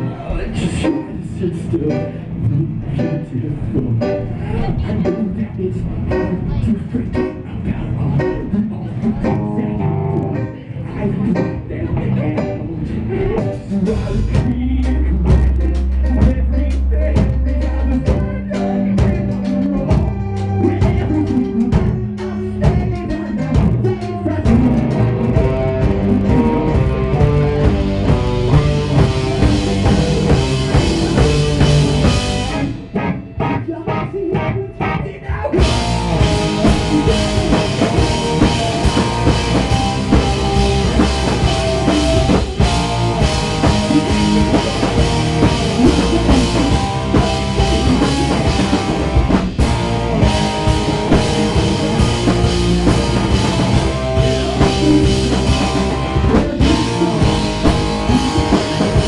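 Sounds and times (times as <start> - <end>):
live rock band playing: 0.0 - 59.0
drum hits: 35.6 - 59.0.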